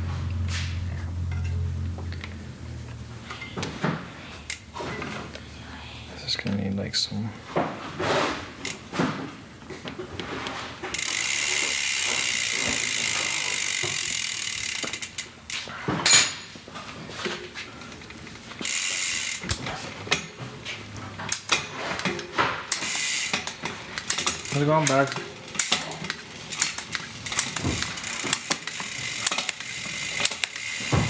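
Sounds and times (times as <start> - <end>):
mechanical ratcheting buzz: 11.0 - 15.3, 18.6 - 19.6, 22.7 - 31.0.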